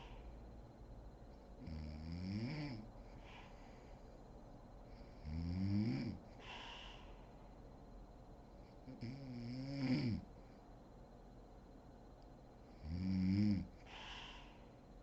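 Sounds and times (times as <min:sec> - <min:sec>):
woman snoring: 0:01.6 - 0:02.9, 0:05.2 - 0:06.2, 0:08.9 - 0:10.2, 0:12.8 - 0:13.7
breathy exhale: 0:03.1 - 0:04.1, 0:06.4 - 0:07.4, 0:13.8 - 0:14.8.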